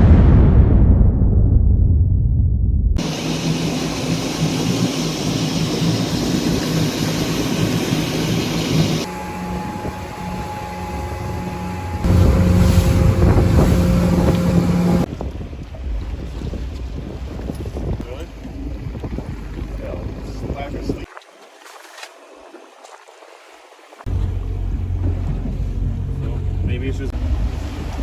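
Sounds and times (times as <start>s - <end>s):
motorboat engine running: 3.0s - 21.1s, 24.0s - 28.0s
wind buffeting microphone: 3.0s - 21.2s.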